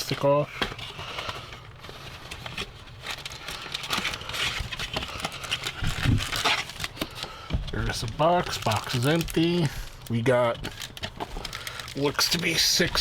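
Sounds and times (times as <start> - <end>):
cardboard box rustling and scraping: 0.0 - 7.0.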